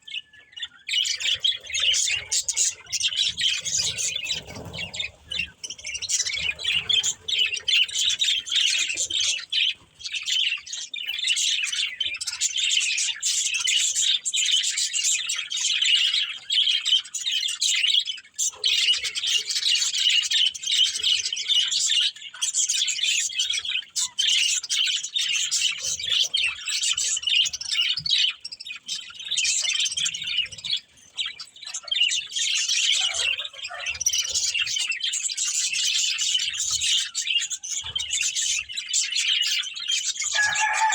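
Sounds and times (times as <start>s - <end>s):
budgerigars chirping: 0.0s - 40.9s
budgerigar squawks: 32.8s - 34.8s, 40.3s - 40.9s.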